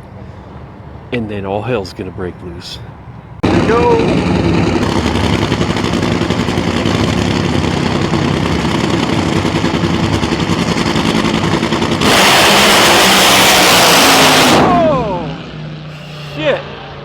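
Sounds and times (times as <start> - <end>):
drag car engine loud lumpy beat: 3.4 - 15.0.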